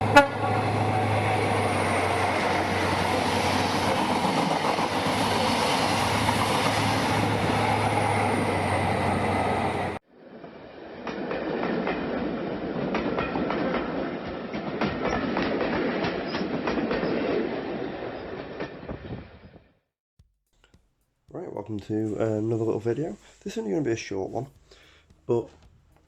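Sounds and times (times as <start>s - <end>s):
train running noise with hum: 0.0s - 19.8s
train wheels clickety-clack: 1.6s - 8.2s, 11.0s - 17.6s, 20.5s - 26.0s
train clicks: 1.8s - 8.2s, 11.1s - 17.5s, 20.4s - 26.0s.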